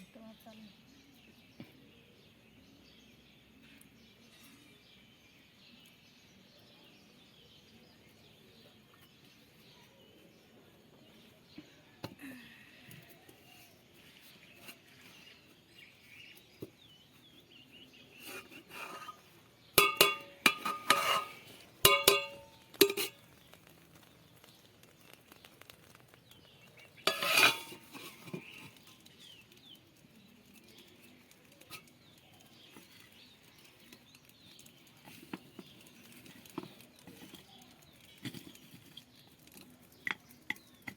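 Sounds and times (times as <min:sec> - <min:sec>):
faint bird chirping: 0:00.0 - 0:40.9
pots and pans clanking: 0:19.7 - 0:23.3, 0:27.0 - 0:29.0.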